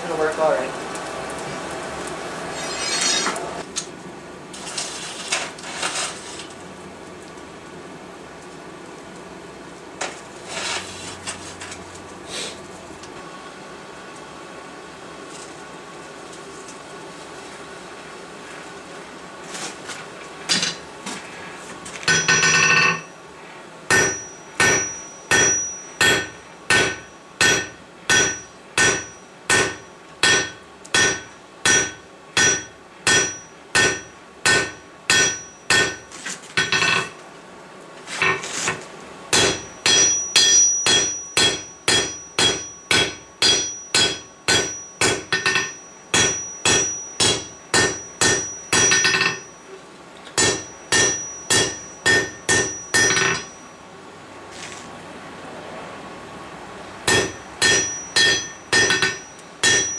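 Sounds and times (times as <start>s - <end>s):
hammer striking steel on anvil: 22.1s - 23.1s, 23.9s - 37.2s, 39.3s - 49.6s, 50.4s - 53.6s, 57.1s - 59.9s.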